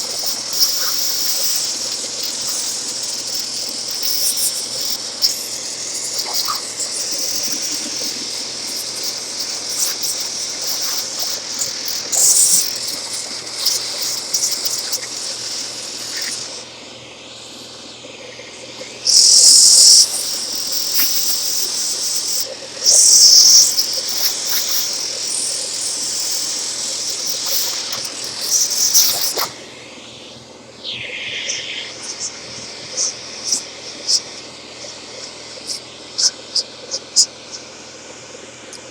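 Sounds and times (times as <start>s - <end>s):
compressed air blowing: 0.0s - 16.6s, 19.0s - 29.8s, 30.8s - 34.2s
vacuum suction hiss: 0.0s - 36.9s.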